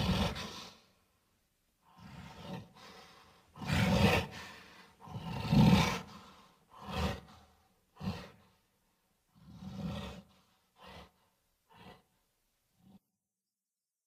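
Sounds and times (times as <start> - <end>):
gorilla roars and grunts: 0.0 - 0.6, 3.6 - 6.2, 6.8 - 7.4.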